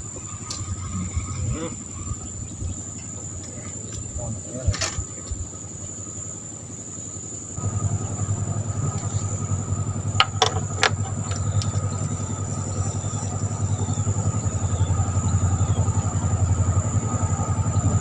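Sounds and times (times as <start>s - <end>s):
small engine running: 4.8s - 18.0s.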